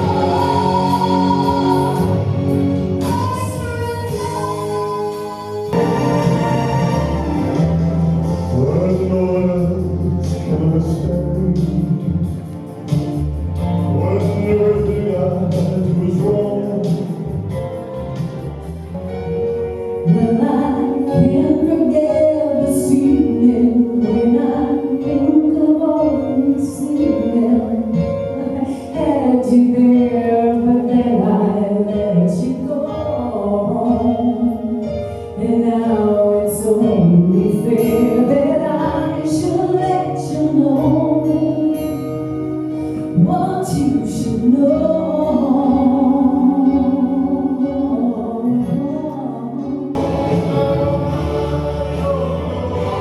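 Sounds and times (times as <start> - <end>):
band accompaniment: 0.0 - 22.8, 50.0 - 53.0.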